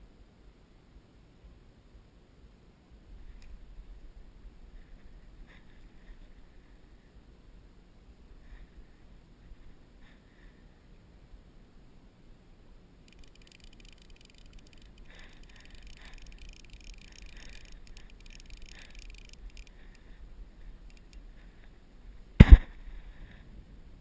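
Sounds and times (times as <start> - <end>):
faint high rapid chirring: 12.8 - 21.6
sharp thump: 22.4 - 22.8.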